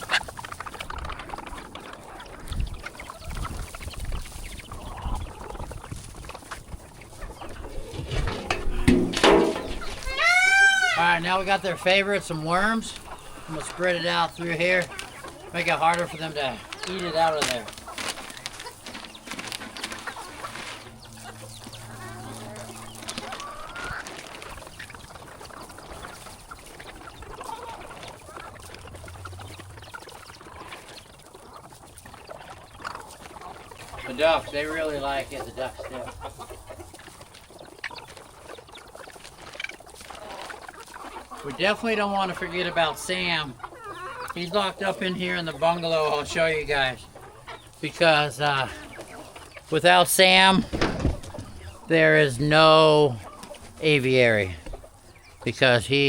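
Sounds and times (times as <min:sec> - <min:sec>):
chickens and roosters clucking: 0:00.0 - 0:56.0
ducks calling: 0:00.0 - 0:56.0
low thuds: 0:07.9 - 0:10.2, 0:50.6 - 0:51.7.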